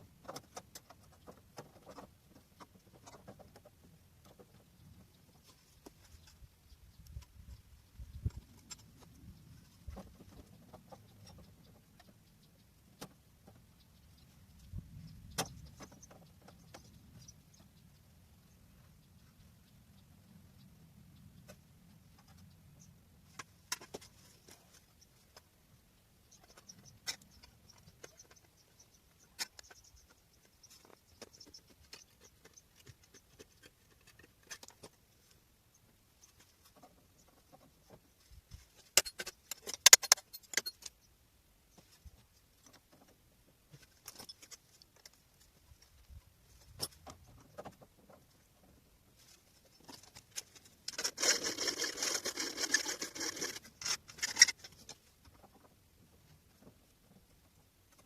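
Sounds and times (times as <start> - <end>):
rasping scrape: 49.9 - 55.0.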